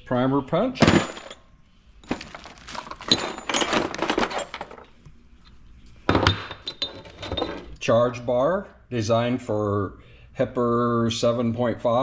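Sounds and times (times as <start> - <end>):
small metal parts clinking: 0.8 - 5.0, 6.1 - 7.8.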